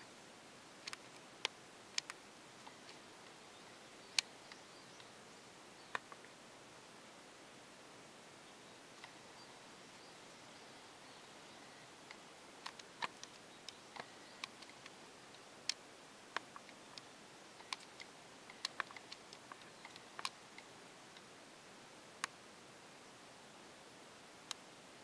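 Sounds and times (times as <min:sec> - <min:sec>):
steady low hiss: 0:00.0 - 0:25.0
faint scattered clicks and ticks: 0:00.8 - 0:05.2, 0:05.8 - 0:06.4, 0:08.8 - 0:21.4.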